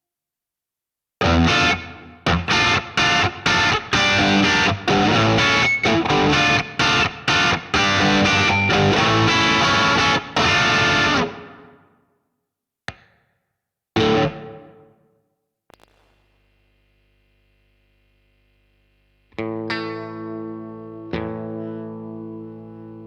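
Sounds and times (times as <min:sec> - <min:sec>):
electric guitar chords: 0:01.2 - 0:11.8, 0:14.0 - 0:15.0, 0:19.3 - 0:23.0.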